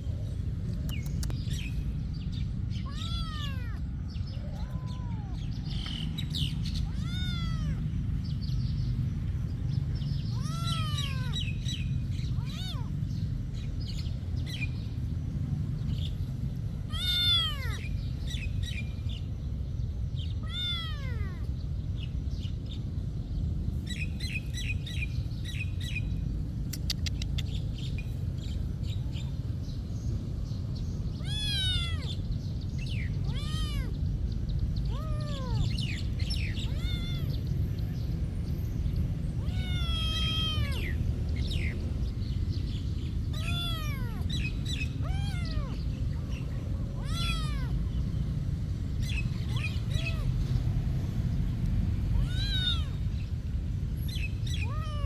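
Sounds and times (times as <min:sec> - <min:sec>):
steady low rumble: 0:00.0 - 0:55.0
cat meowing: 0:02.7 - 0:08.4, 0:10.0 - 0:13.2, 0:16.8 - 0:18.4, 0:20.3 - 0:21.5, 0:31.1 - 0:37.9, 0:39.4 - 0:41.8, 0:43.2 - 0:48.1, 0:49.0 - 0:50.6, 0:52.1 - 0:53.3, 0:54.2 - 0:55.0.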